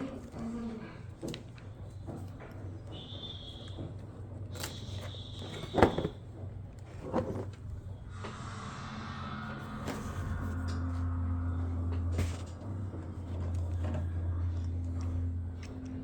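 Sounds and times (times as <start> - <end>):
objects being handled: 0.0 - 7.9, 12.0 - 16.0.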